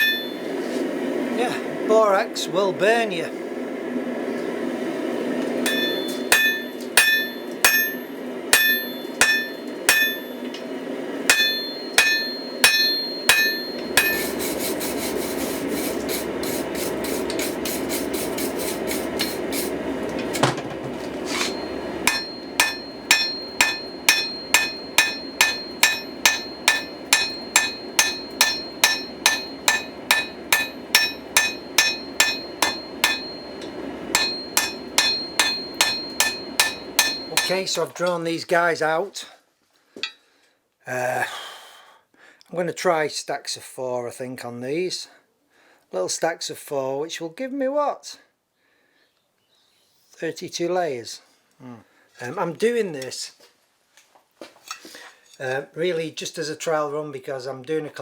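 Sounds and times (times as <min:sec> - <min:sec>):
hammer blows on hot steel: 0:00.0 - 0:00.6, 0:05.6 - 0:10.7, 0:11.3 - 0:19.9, 0:20.8 - 0:37.9.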